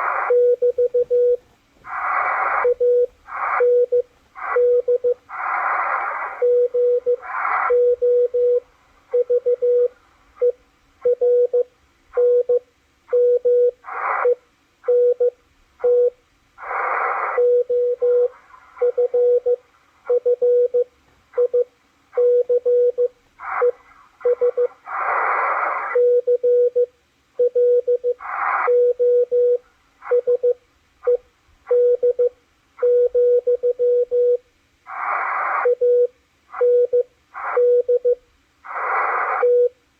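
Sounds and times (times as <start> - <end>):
hissy radio band noise: 0.0 - 11.4, 13.1 - 20.4, 21.0 - 26.3, 28.0 - 30.3, 34.8 - 39.7.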